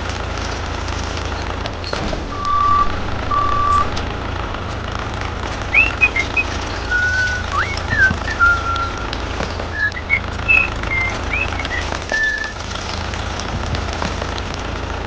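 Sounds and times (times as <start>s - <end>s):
steady low hum: 0.1s - 15.0s
vehicle reversing alarm beeps: 2.2s - 4.3s, 5.6s - 9.1s, 9.7s - 12.6s
short whistled chirps: 5.7s - 9.1s, 9.7s - 12.6s.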